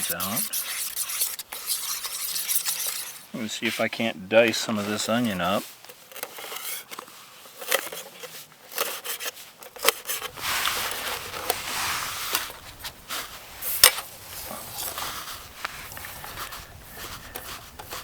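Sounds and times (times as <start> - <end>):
knife scraping: 0.0 - 3.9.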